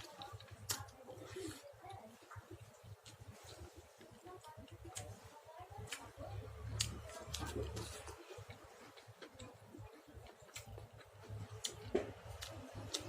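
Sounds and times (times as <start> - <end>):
chewing and lip-smacking: 0.0 - 13.0.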